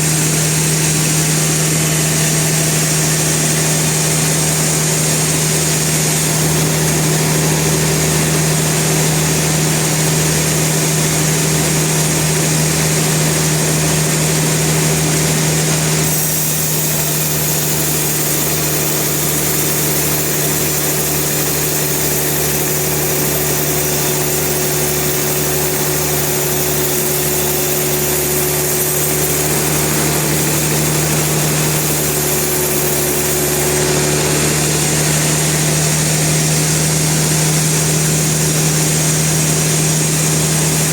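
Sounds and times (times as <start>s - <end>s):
sawmill machinery hum: 0.0s - 40.9s.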